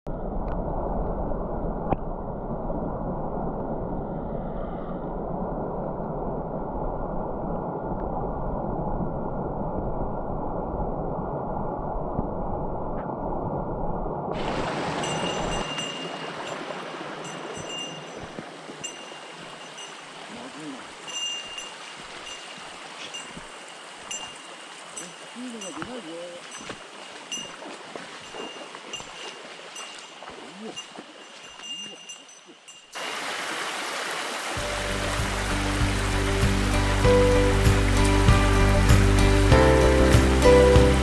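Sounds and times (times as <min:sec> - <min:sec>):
rushing stream water: 0:14.3 - 0:41.0.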